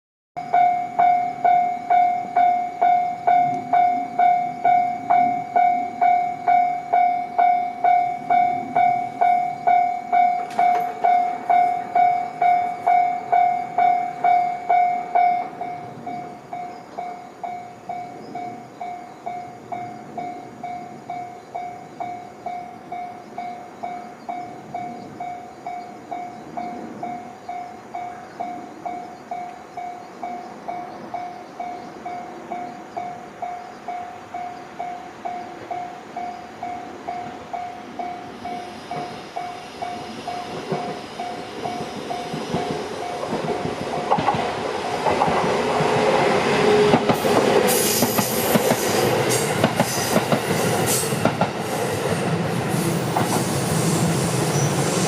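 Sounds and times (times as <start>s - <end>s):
electronic level crossing bell: 0.4s - 26.4s.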